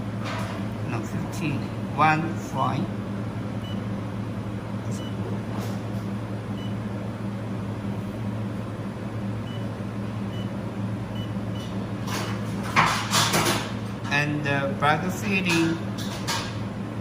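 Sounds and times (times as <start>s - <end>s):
noisy clatter: 12.0s - 14.2s.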